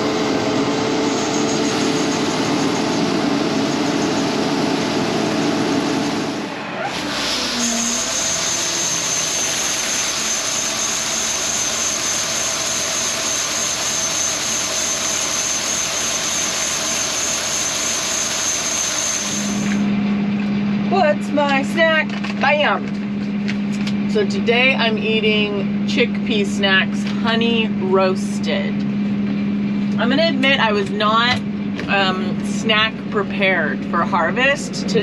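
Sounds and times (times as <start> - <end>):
tractor engine and machinery: 0.0 - 20.6
thin high whine: 7.4 - 19.9.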